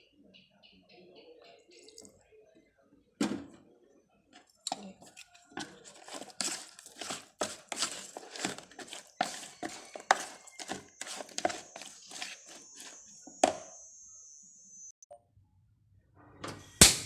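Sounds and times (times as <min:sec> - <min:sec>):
faint high whine: 0:10.9 - 0:15.6.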